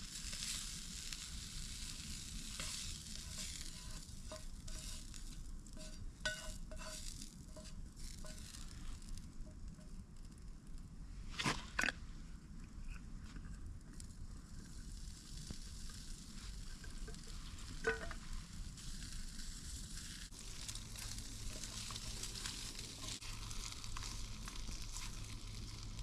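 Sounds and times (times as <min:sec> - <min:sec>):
meat sizzling in a pan: 0:00.0 - 0:10.4, 0:14.1 - 0:26.0
utensil stirring and knocking pan: 0:00.2 - 0:10.0, 0:16.8 - 0:18.3, 0:20.3 - 0:25.8
utensil scraping pan: 0:01.6 - 0:09.1, 0:20.6 - 0:25.2.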